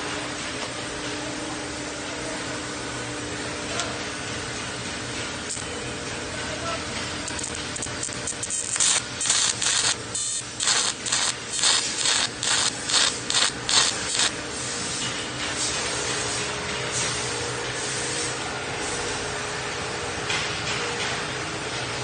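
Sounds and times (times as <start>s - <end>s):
machine hum: 0.0s - 22.0s.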